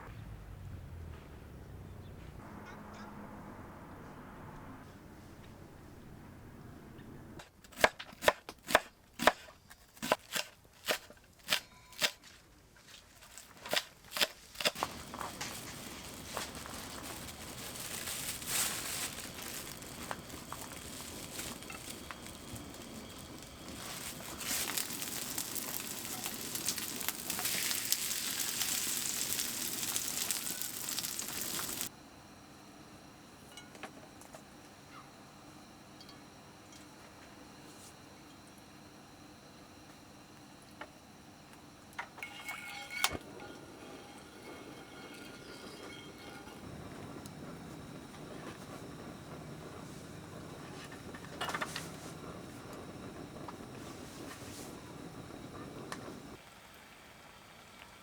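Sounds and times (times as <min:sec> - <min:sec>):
food frying sizzle: 0:14.8 - 0:31.9.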